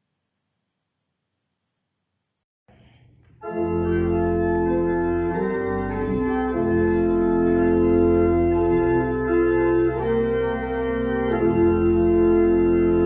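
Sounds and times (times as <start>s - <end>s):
organ playing sustained chords: 3.4s - 13.0s.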